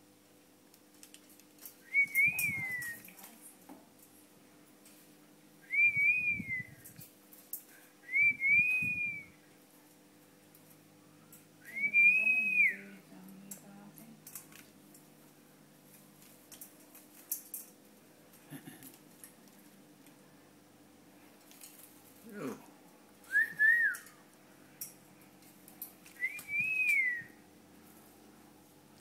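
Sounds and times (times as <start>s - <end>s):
long rising and falling whistles: 26.2s - 27.3s.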